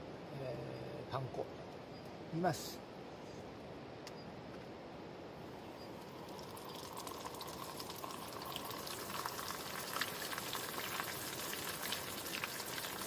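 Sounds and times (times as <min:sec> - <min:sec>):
deep-frying in hot oil: 0:05.8 - 0:13.0.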